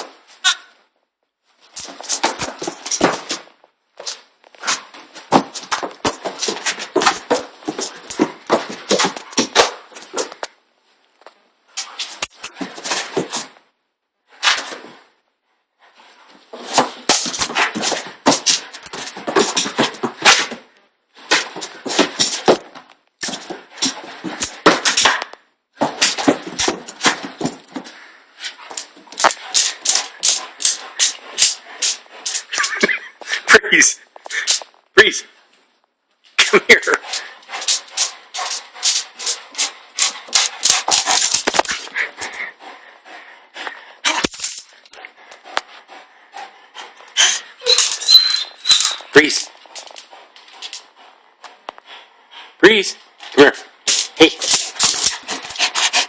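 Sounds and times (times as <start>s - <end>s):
dog chewing squeaky toy: 47.2s - 50.0s.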